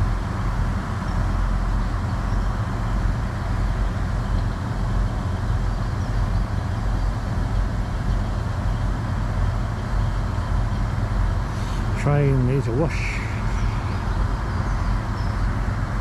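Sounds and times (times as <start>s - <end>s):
diesel train engine idling: 0.0s - 16.0s
faint hiss: 11.5s - 14.5s.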